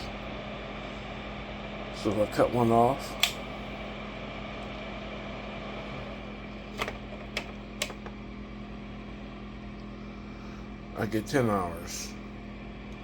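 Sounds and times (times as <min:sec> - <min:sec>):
fan-like hum: 0:00.0 - 0:13.0
switch clicks: 0:03.2 - 0:03.4.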